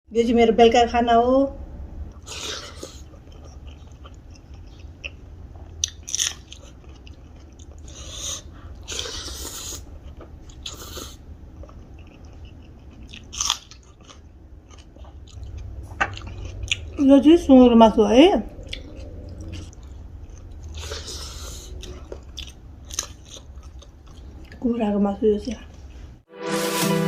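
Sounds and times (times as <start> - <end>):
person chewing food: 2.1 - 17.2, 18.5 - 24.6.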